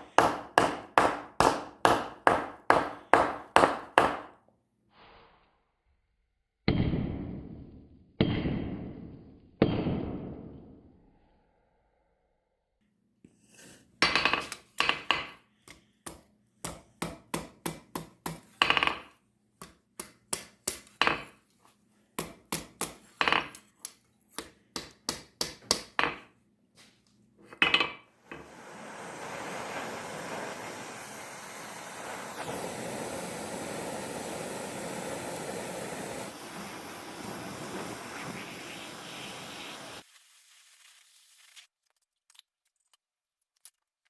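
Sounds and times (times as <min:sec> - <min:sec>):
hammer striking steel on anvil: 0:00.0 - 0:04.3.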